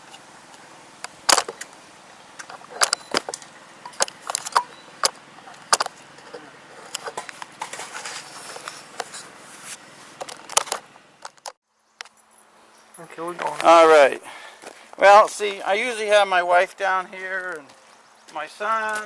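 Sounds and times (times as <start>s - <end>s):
faint background noise: 0.0s - 19.0s
sharp clicks and knocks: 2.4s - 9.1s, 10.2s - 12.2s.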